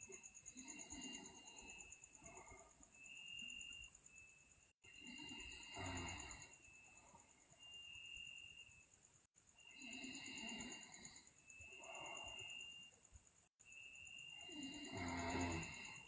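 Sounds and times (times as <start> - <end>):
person snoring faintly: 0.0 - 2.8, 4.9 - 6.7, 9.6 - 12.9, 14.4 - 16.0
crickets chirping: 0.0 - 16.0.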